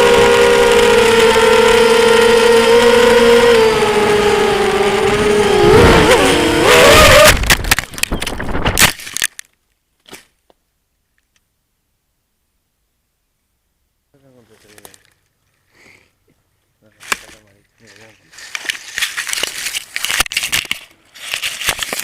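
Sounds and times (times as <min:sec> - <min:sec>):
drone motors whining: 0:00.0 - 0:08.9
wind noise on microphone: 0:04.9 - 0:08.9.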